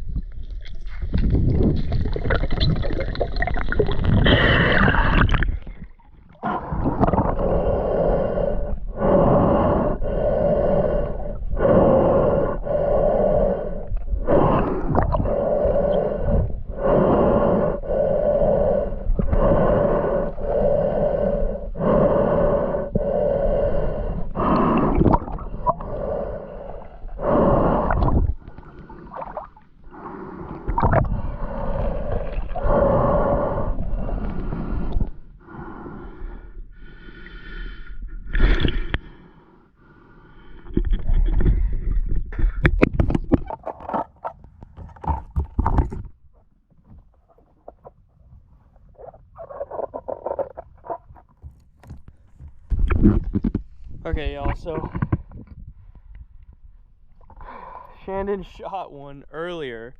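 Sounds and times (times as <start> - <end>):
breathing through a snorkel: 1.5 - 43.5, 57.2 - 58.2.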